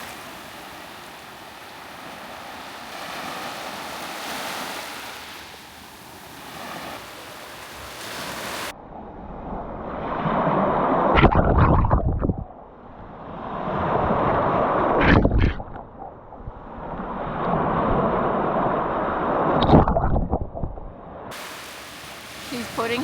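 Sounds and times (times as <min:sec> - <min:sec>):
small waves breaking on beach: 0:00.0 - 0:08.8, 0:21.3 - 0:23.0.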